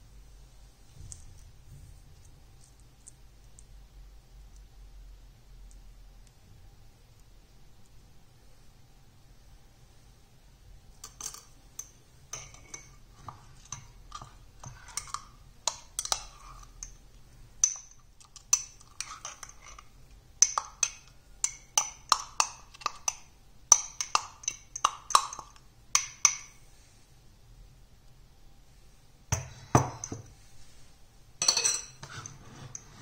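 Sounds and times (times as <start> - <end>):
utensil clinking on ringing vessel: 31.4 - 32.0.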